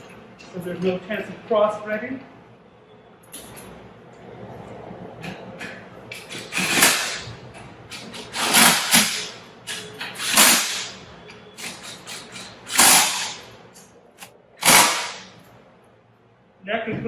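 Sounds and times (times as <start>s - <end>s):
power driver running bolts: 6.1s - 7.3s, 7.9s - 13.5s, 14.6s - 15.3s.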